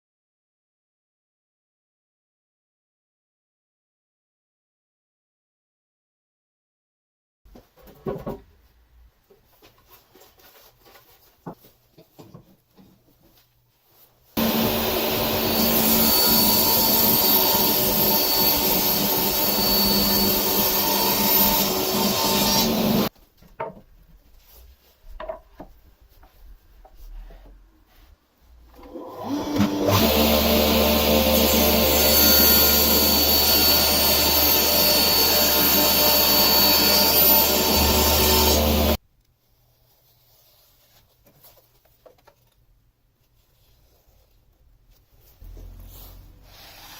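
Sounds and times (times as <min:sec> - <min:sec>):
power tool motor whining: 0:14.4 - 0:23.1, 0:28.9 - 0:39.0.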